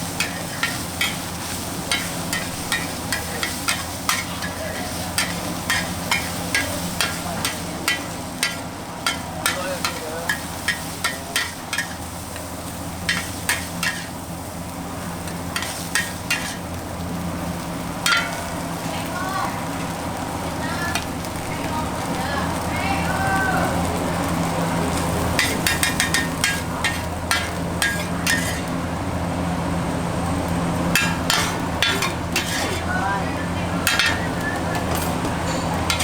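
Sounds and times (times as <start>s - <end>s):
rice sizzling in wok: 0.0s - 36.0s
metal spatula scraping wok: 0.2s - 14.2s, 15.2s - 16.6s, 25.4s - 28.8s, 30.9s - 33.0s, 33.8s - 36.0s.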